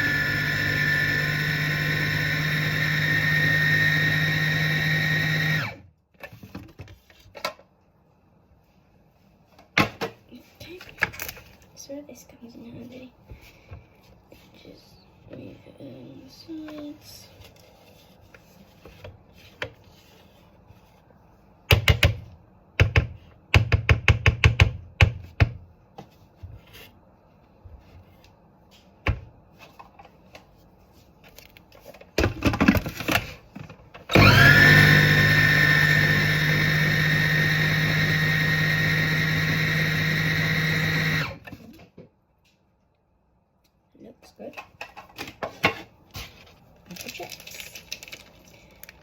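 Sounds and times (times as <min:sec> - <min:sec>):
food processor running: 0:00.0 - 0:05.8, 0:34.1 - 0:41.4.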